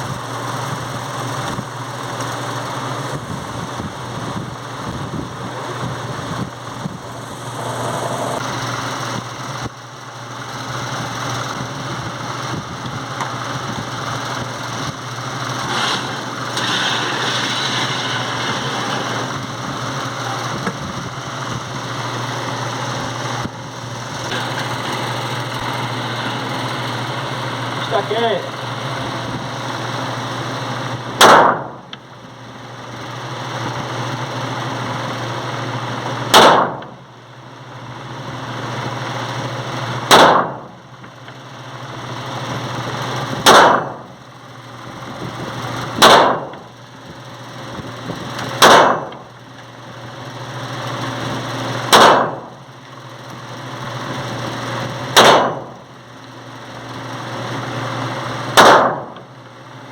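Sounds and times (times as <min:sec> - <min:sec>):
pistol shots: 0:31.2 - 0:31.7, 0:36.3 - 0:36.8, 0:40.1 - 0:40.6, 0:43.4 - 0:43.9, 0:46.0 - 0:46.5, 0:48.6 - 0:49.1, 0:51.9 - 0:52.4, 0:55.2 - 0:55.6, 0:58.6 - 0:59.1.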